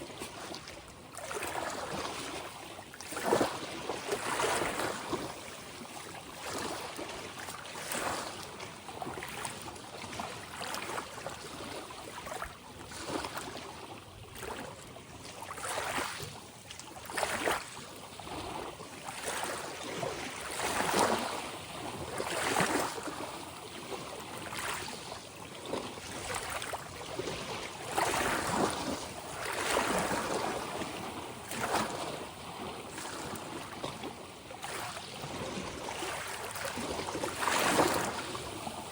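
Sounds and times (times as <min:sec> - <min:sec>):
ocean waves breaking: 0:00.2 - 0:09.7, 0:18.4 - 0:38.9.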